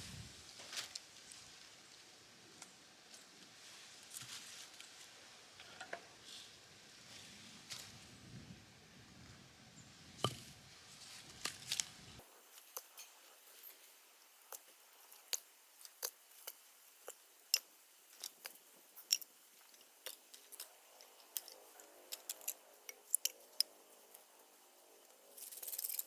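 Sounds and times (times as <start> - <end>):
campfire crackling: 12.2 - 26.0.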